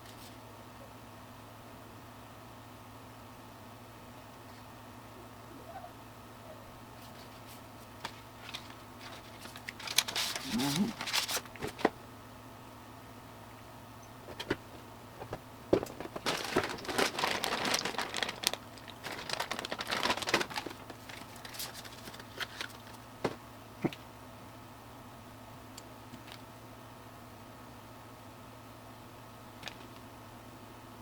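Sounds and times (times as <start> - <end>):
faint hum: 0.0 - 31.0
packaging crinkling and rustling: 8.0 - 12.0, 14.3 - 23.4.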